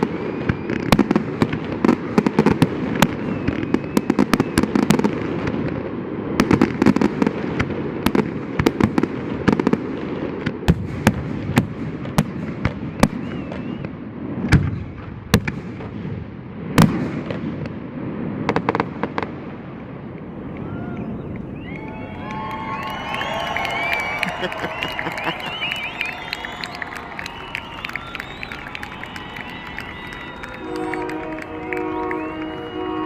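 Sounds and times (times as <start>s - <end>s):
loud firework booms: 0.0s - 20.5s
fireworks bangs and crackling: 0.0s - 33.0s.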